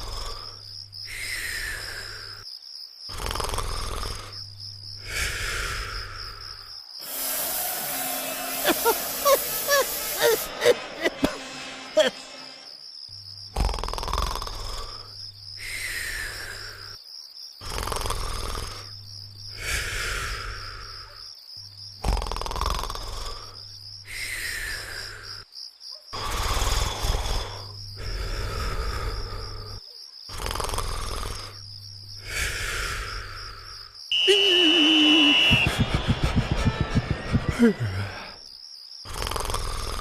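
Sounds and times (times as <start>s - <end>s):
cartoon snoring with whistle: 3.1s - 4.4s, 13.6s - 17.0s, 17.6s - 18.9s, 22.0s - 25.2s, 26.2s - 31.6s, 32.2s - 35.8s, 39.0s - 40.0s
high chirping: 34.1s - 35.7s.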